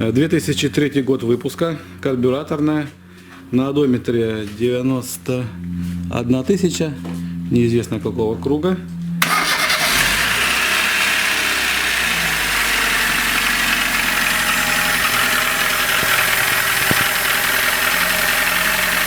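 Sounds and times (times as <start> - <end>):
car engine idling with knocking: 10.0 - 19.0.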